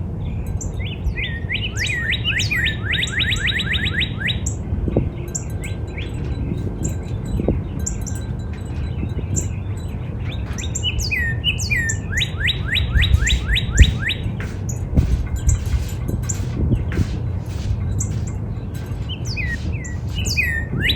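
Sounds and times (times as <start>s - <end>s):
steady low rumble: 0.0s - 20.9s
high thin bird chirps: 0.5s - 20.9s
cardinal whistling: 1.2s - 4.6s, 10.6s - 14.3s.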